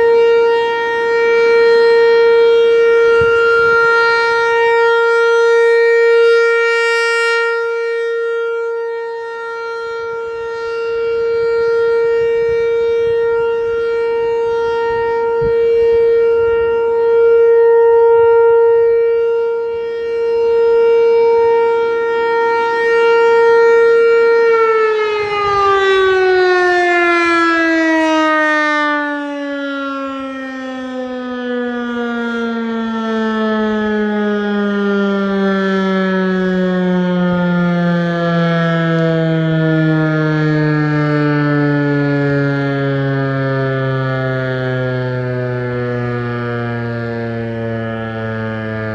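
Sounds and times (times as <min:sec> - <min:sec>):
siren winding down: 0:00.0 - 0:48.9
warning siren steady tone: 0:00.0 - 0:48.9.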